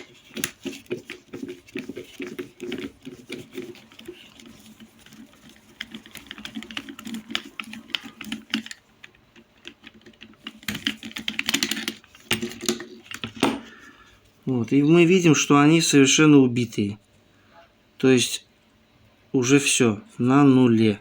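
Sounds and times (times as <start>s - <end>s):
screwdriver and metal parts clicking: 2.6s - 13.4s.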